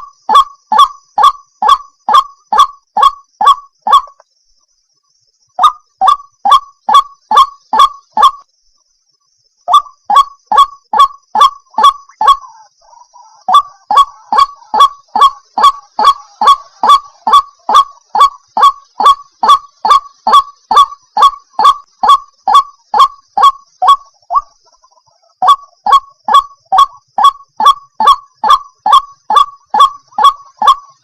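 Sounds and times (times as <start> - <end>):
waterhen calling: 9.7 - 31.0.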